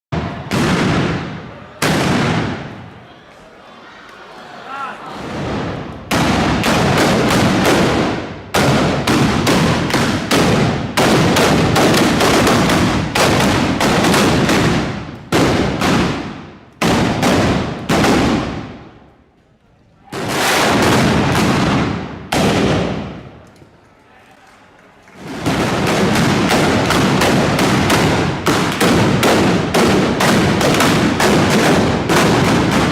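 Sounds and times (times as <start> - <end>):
gunshots with echoing rumble: 0.2 - 2.8, 5.2 - 19.1, 20.1 - 23.4, 25.2 - 32.9.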